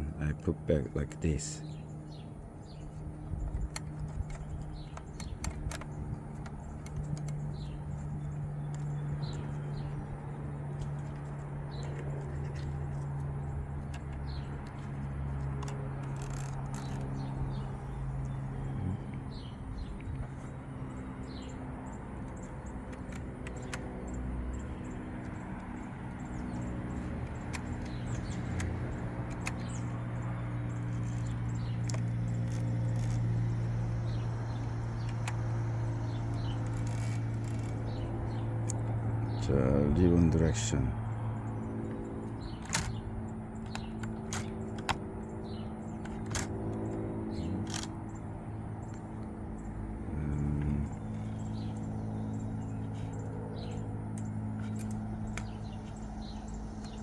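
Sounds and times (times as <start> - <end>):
small birds chirping: 0.0 - 57.0
steady low hum: 0.0 - 57.0
light clicks: 2.1 - 39.4, 41.0 - 57.0.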